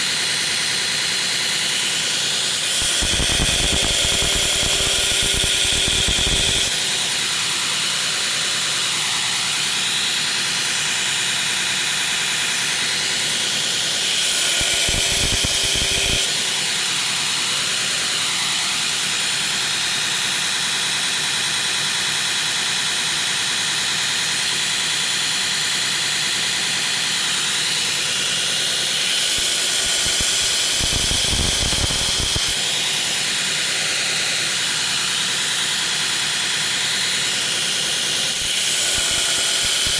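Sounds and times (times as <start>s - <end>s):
belt grinder grinding steel blade: 1.3s - 7.5s, 12.3s - 17.4s, 27.2s - 39.9s.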